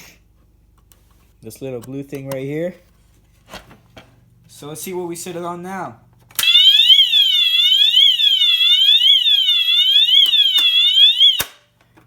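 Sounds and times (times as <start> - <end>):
fire alarm horn sweeping tone: 6.4 - 11.5.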